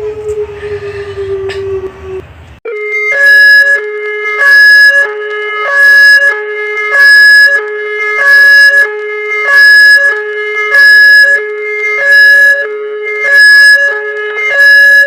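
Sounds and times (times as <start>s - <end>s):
emergency alert alarm tone: 5.7s - 15.0s.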